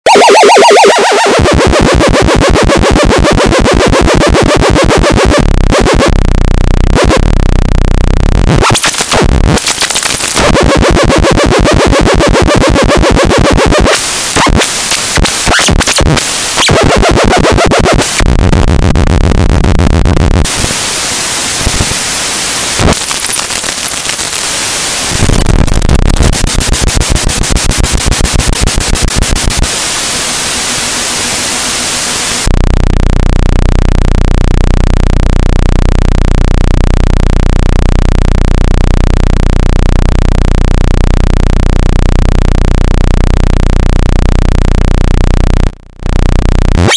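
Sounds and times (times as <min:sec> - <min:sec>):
harsh electric buzzing: 0:00.0 - 0:33.4.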